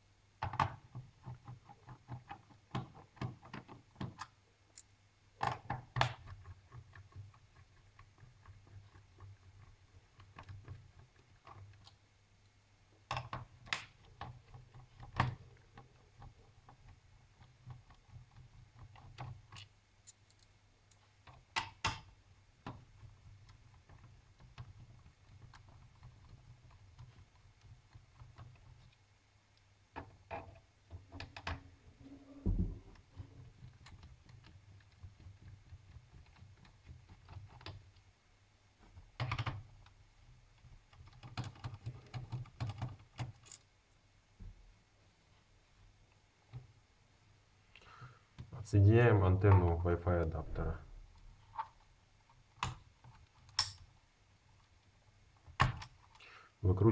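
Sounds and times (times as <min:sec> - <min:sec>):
low steady hum: 0:43.4 - 0:52.3.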